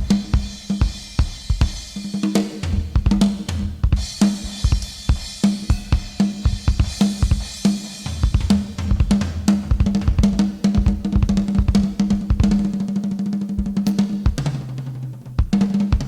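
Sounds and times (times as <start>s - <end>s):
cymbals and hi-hat: 0.0s - 10.7s, 13.7s - 16.0s
pitched drum hits: 0.0s - 12.8s, 13.5s - 16.0s
bass drum kicks: 2.6s - 12.7s, 13.6s - 14.6s
snare drum strikes: 13.6s - 14.8s.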